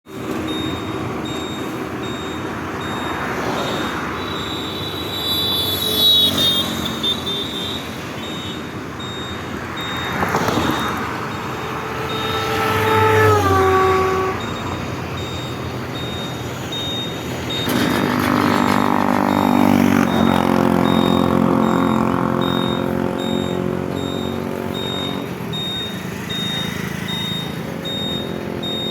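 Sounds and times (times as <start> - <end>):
road traffic: 0.0 - 28.9
vehicle horns: 3.1 - 8.6, 10.3 - 15.0, 17.5 - 28.9.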